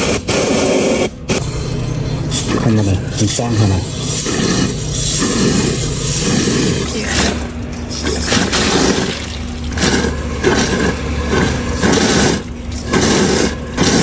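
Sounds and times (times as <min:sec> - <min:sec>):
compressed air and fluid spraying: 0:00.0 - 0:01.5, 0:03.2 - 0:14.0.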